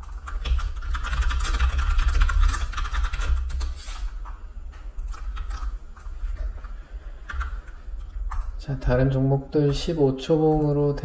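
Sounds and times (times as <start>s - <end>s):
typing on computer keyboard: 0.0s - 3.8s, 5.0s - 6.1s, 7.2s - 8.6s
steady low hum: 0.0s - 11.0s.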